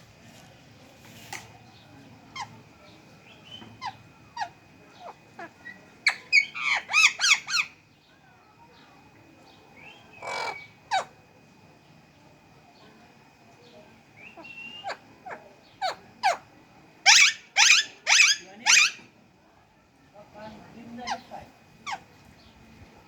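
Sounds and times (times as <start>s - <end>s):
parrot squawking: 3.8s - 7.7s, 17.1s - 19.0s.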